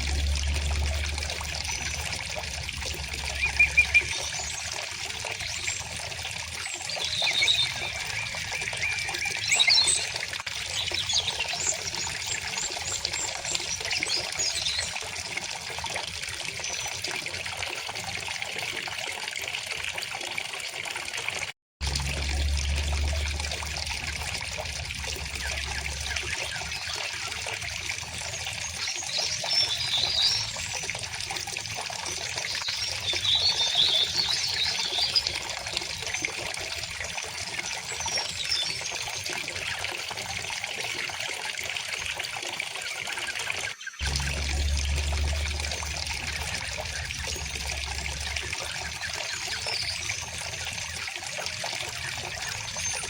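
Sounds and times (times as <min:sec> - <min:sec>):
songbirds chirping: 0:00.1 - 0:06.1
river water flowing over stones: 0:41.0 - 0:53.0.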